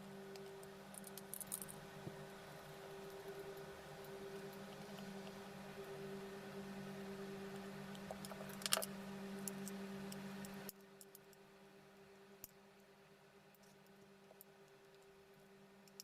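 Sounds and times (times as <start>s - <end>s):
low electrical hum: 0.0s - 16.0s
small objects clicking: 0.9s - 1.8s.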